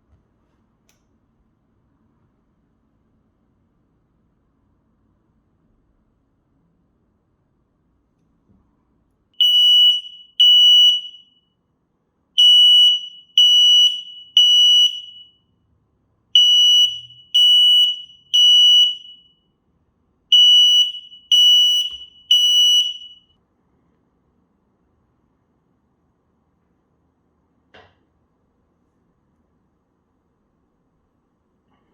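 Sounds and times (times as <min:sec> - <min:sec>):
smoke alarm beeping: 0:09.4 - 0:11.5, 0:12.4 - 0:15.5, 0:16.4 - 0:19.4, 0:20.3 - 0:23.4.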